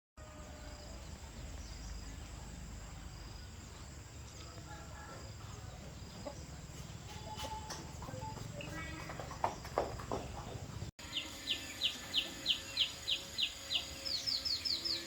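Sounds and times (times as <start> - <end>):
chickens clucking: 4.6 - 10.9.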